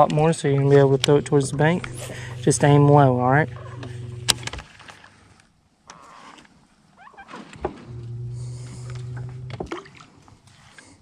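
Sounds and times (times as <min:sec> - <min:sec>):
small electric motor humming: 0:01.0 - 0:04.6.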